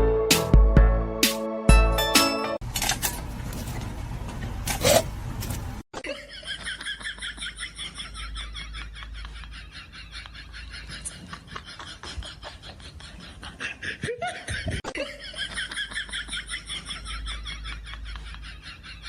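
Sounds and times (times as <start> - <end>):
high-pitched laughter: 6.0 - 19.0.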